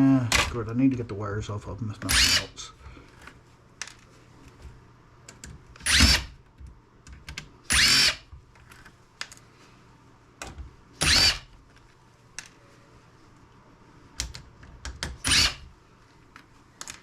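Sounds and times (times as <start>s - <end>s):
electric screwdriver whining: 2.1s - 2.5s, 5.8s - 6.3s, 7.7s - 8.3s, 11.0s - 11.5s, 15.2s - 15.6s.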